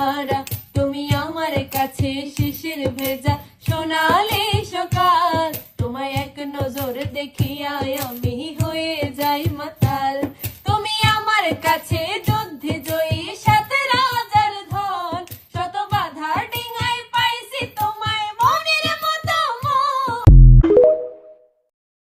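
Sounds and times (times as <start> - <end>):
loud low thump: 20.3 - 20.8.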